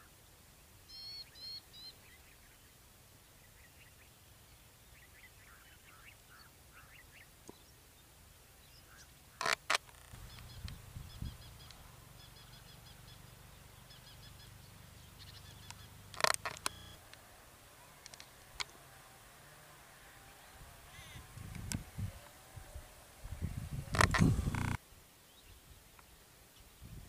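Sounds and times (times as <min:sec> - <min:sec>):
birds chirping: 0:00.0 - 0:25.6
loud sharp bird calls: 0:08.6 - 0:22.6.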